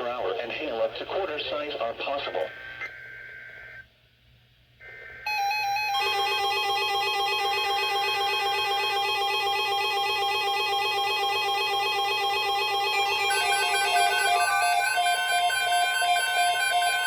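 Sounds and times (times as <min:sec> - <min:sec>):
trilling electronic alert tone: 0:05.3 - 0:17.0
data tones burst: 0:10.1 - 0:17.0.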